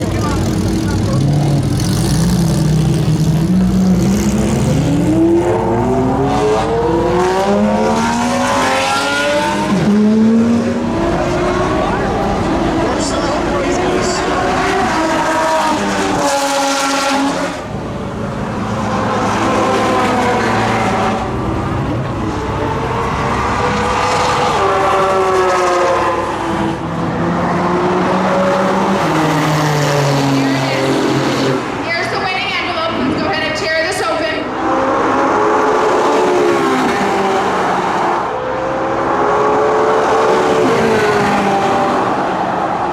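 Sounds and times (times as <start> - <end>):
sports car engine accelerating: 0.0 - 32.0.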